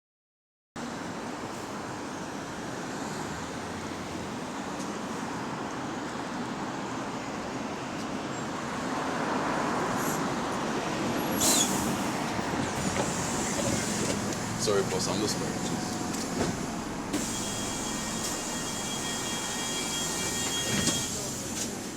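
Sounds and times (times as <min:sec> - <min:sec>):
bus engine and running noise: 0:00.8 - 0:21.9
air brake hiss: 0:11.3 - 0:12.1, 0:17.2 - 0:21.7.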